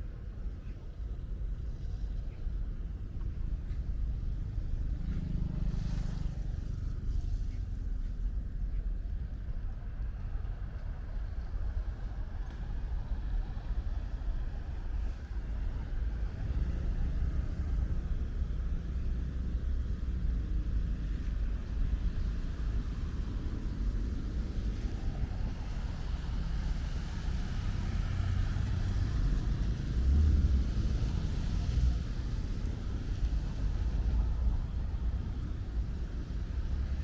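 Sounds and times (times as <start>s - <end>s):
road traffic rumble: 0.0s - 37.0s
light rain hiss: 11.8s - 37.0s.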